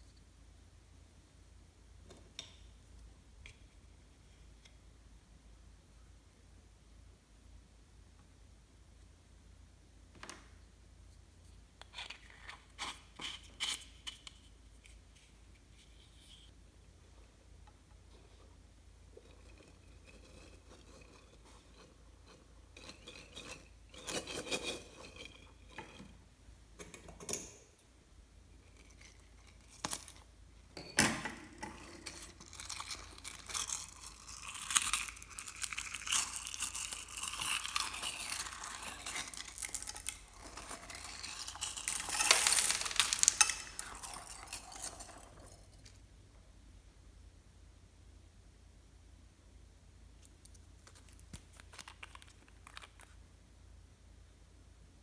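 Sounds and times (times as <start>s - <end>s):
slime being stirred: 31.6s - 45.8s, 50.2s - 53.2s
sticky slime crackling: 32.2s - 45.4s.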